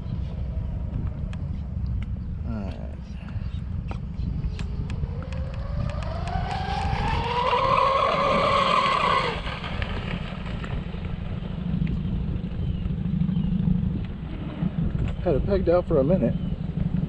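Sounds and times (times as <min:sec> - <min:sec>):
wind rumble on microphone: 0:00.0 - 0:17.0
electric motors whining: 0:04.4 - 0:10.9.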